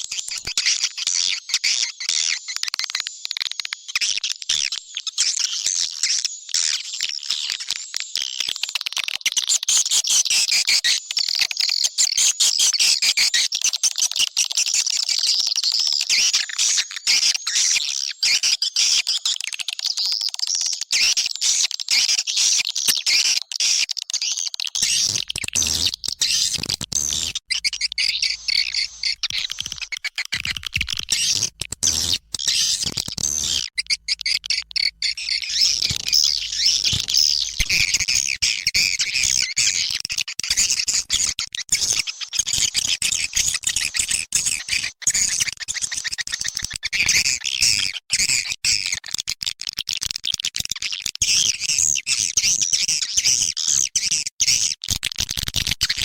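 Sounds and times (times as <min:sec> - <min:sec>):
swiftlets chirping and twittering: 0:24.2 - 0:42.2.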